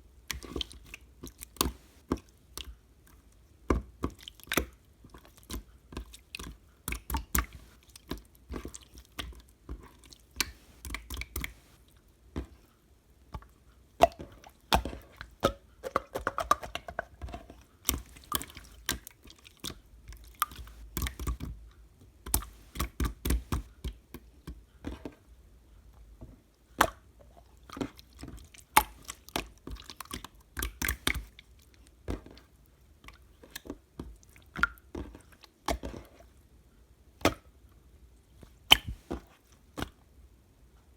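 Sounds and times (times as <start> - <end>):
slime squishing sticky pops: 10.4 - 11.8, 17.9 - 21.6, 22.3 - 24.0, 27.8 - 31.3, 38.6 - 39.2.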